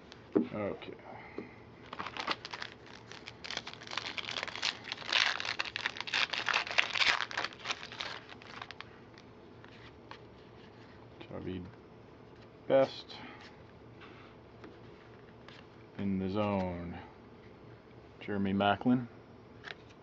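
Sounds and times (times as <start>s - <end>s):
plastic wrapper crinkling: 1.8s - 10.2s.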